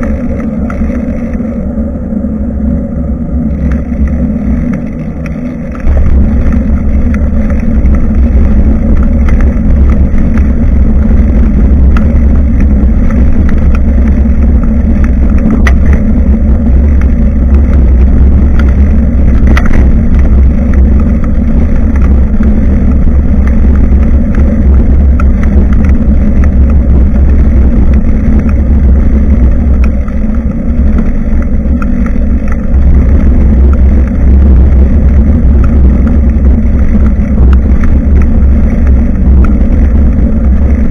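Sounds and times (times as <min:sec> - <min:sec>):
road rumble: 0:00.0 - 0:40.9
wind buffeting microphone: 0:00.0 - 0:40.9.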